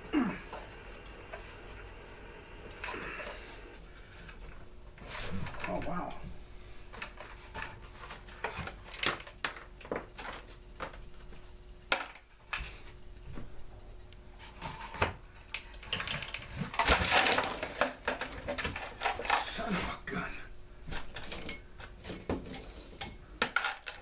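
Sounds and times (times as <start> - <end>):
faint steady hum: 0.0 - 24.0
hand tools and metal parts clinking: 21.0 - 24.0.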